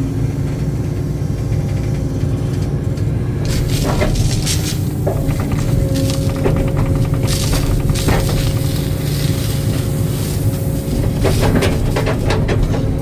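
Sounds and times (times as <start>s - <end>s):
excavator engine and hydraulics whining: 0.0s - 13.0s
clanks and scrapes: 3.4s - 13.0s.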